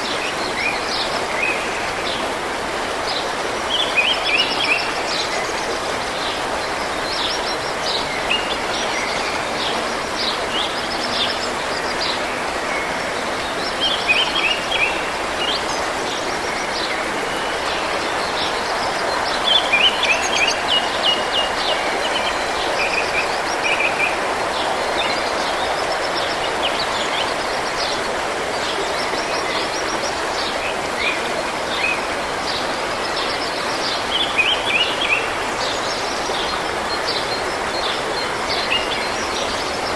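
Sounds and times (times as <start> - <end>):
forest stream running: 0.0 - 39.9.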